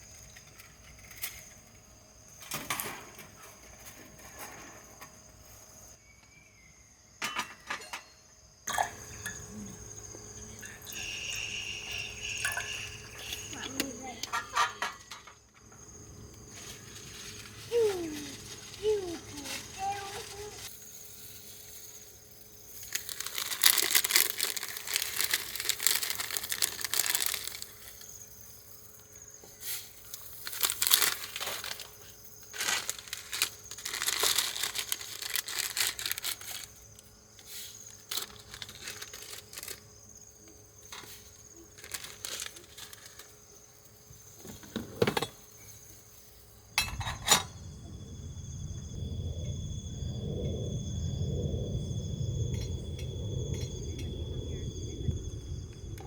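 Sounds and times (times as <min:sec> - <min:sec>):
low hum with high whine: 0:08.8 - 0:56.0
crinkling and rustling: 0:16.2 - 0:28.3, 0:29.0 - 0:46.1.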